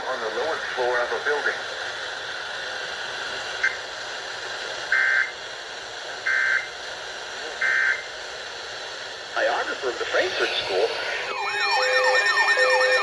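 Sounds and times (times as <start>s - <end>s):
radio static hiss: 0.0s - 5.4s, 9.2s - 13.0s
buzzing digital data tones: 10.3s - 13.0s.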